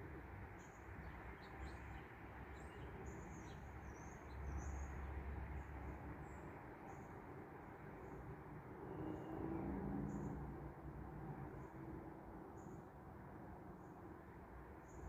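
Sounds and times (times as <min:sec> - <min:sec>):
small birds chirping: 0:00.6 - 0:05.0.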